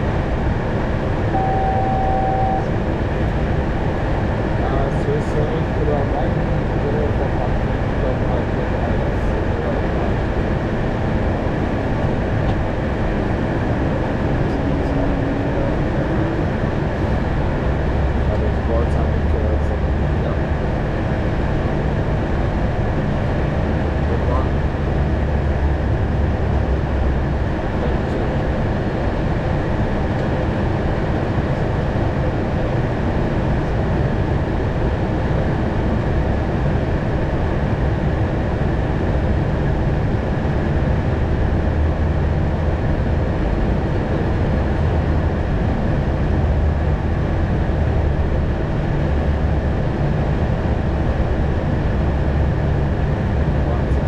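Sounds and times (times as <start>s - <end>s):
faint steady hum tones: 0.0s - 9.8s
airflow and engine rush: 0.0s - 54.0s.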